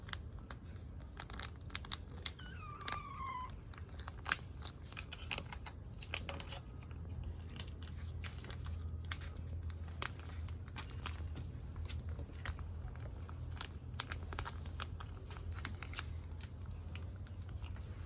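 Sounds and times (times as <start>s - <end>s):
steady low hum: 0.0s - 18.0s
cat meowing: 2.3s - 3.7s.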